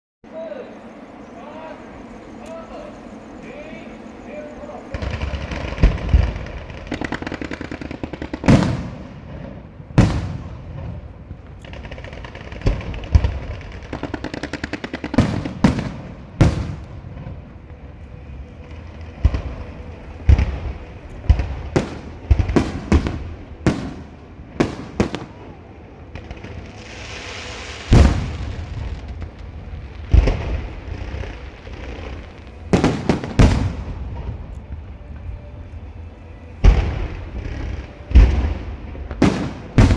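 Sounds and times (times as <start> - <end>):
firecrackers popping: 3.4 - 39.9
loud firework bangs: 4.9 - 17.4, 19.2 - 25.5, 26.2 - 34.4, 36.6 - 39.9
firework hiss and boom: 5.0 - 17.5, 26.1 - 35.0, 36.6 - 39.9.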